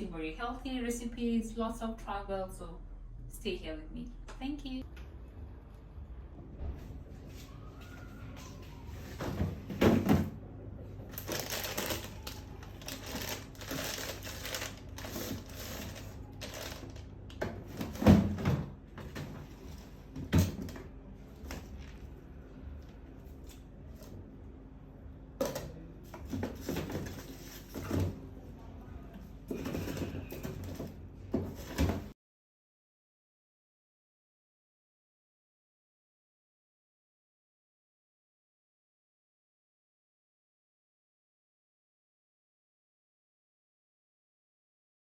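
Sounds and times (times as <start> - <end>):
steady low hum: 0.0 - 7.4
household items clattering: 12.8 - 20.8.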